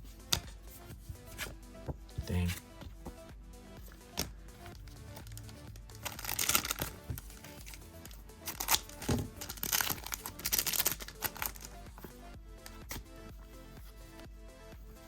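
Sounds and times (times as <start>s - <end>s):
background music: 0.0s - 15.0s
foil wrapper crinkling: 5.4s - 6.9s, 8.5s - 11.7s.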